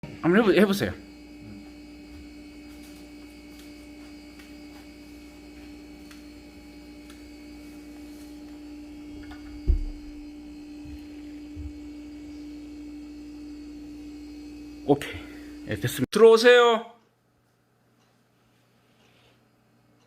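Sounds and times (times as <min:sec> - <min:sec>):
electrical hum: 0:00.0 - 0:20.0
dull thump: 0:09.6 - 0:10.2.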